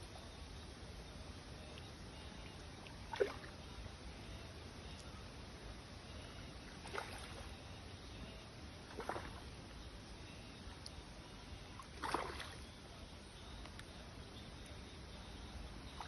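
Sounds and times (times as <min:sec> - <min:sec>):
low background noise: 0:00.0 - 0:16.0
water splashing: 0:02.9 - 0:03.6, 0:06.7 - 0:07.5, 0:08.8 - 0:09.6, 0:11.7 - 0:12.7.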